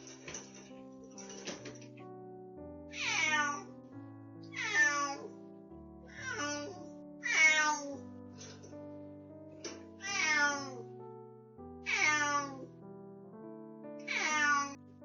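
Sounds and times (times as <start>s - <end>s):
background music: 0.0s - 15.0s
cat meowing loudly: 2.9s - 3.7s, 4.5s - 5.3s, 6.1s - 8.0s, 10.0s - 10.8s, 11.8s - 12.7s, 14.0s - 14.8s.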